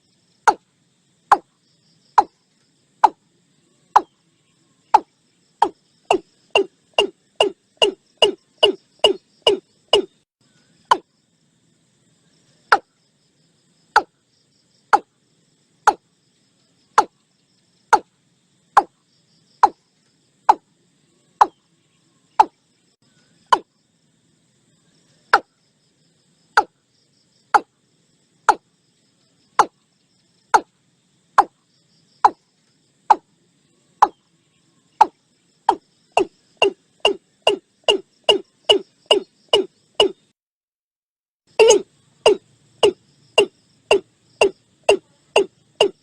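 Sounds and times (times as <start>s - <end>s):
bird calling sharp notes: 5.0s - 10.2s, 36.2s - 40.2s, 41.6s - 46.0s.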